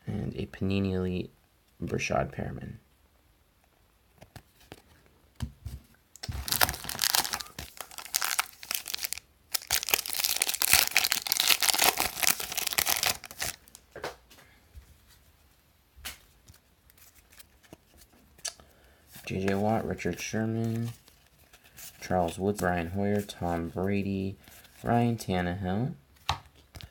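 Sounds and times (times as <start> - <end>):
wrapper tearing and crinkling: 6.2 - 13.8.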